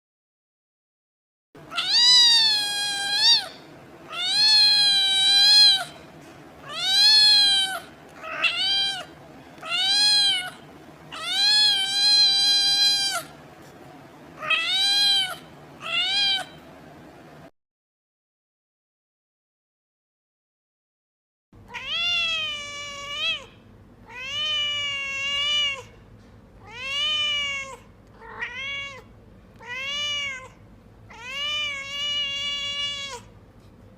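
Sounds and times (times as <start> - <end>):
cat meowing: 1.7 - 6.0, 6.6 - 13.4, 14.4 - 16.6, 21.7 - 26.0, 26.6 - 33.3.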